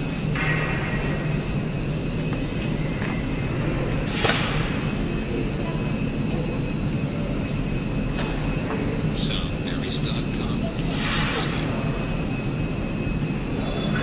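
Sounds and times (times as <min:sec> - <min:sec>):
machinery rumble: 0:09.0 - 0:13.7
murmur of voices: 0:09.2 - 0:11.9.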